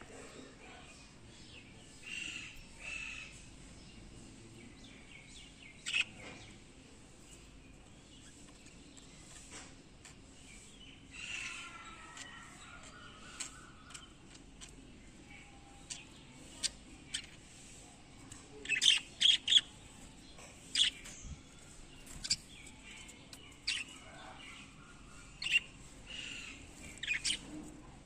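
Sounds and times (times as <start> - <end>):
budgerigars chirping and squawking: 5.7 - 6.3, 8.2 - 17.8, 18.6 - 27.6.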